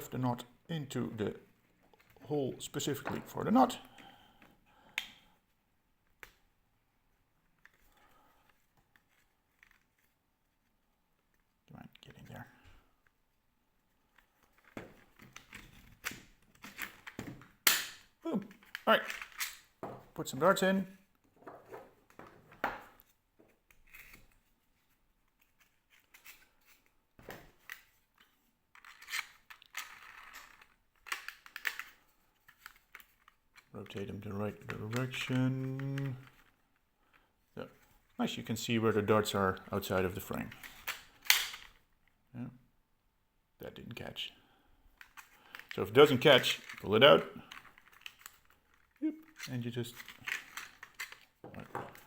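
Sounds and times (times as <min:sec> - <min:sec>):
handling small plastic parts: 0:07.1 - 0:38.2, 0:39.2 - 0:42.2, 0:44.9 - 0:52.0
plastic clicks and scraping: 0:27.5 - 0:34.0, 0:45.0 - 0:52.0.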